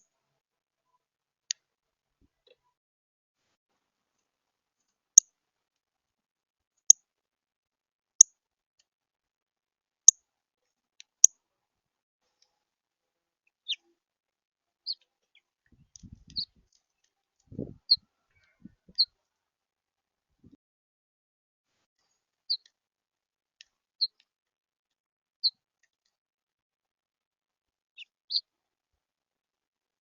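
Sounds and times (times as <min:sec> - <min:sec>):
soft bird chirps: 0:13.6 - 0:13.9, 0:14.8 - 0:19.2, 0:22.5 - 0:22.7, 0:24.0 - 0:24.2, 0:28.0 - 0:28.5.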